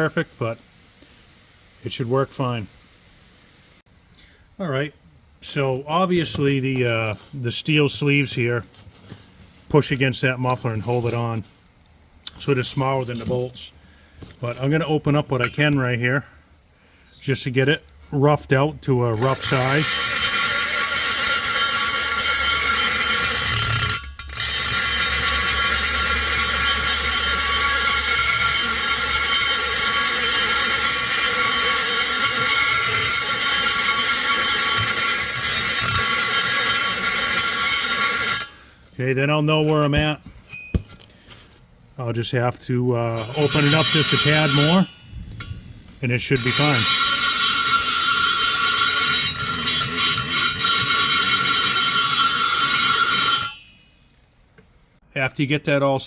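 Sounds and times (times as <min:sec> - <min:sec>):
rotary grinder grinding metal: 0:19.0 - 0:38.6, 0:43.1 - 0:54.3.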